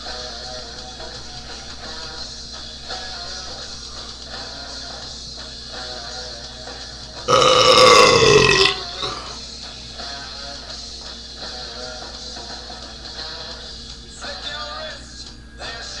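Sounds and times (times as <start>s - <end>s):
rock music with guitar: 0.0s - 14.0s
man belching: 7.3s - 9.4s.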